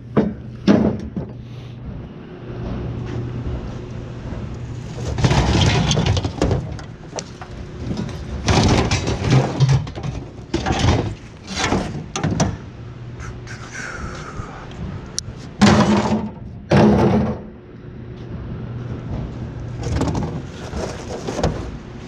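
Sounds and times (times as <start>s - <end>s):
low steady hum: 0.0s - 22.0s
heavy metal clanks and crashes: 3.5s - 12.7s, 15.6s - 17.6s.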